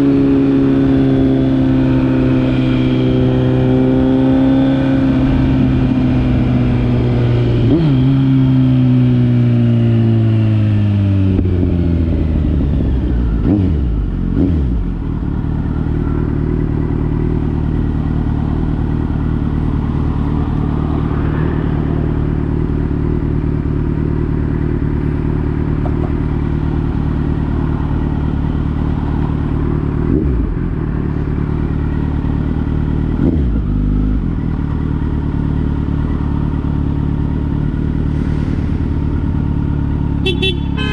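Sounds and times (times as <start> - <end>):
motorcycle engine idling: 11.5 - 21.2, 21.8 - 38.0.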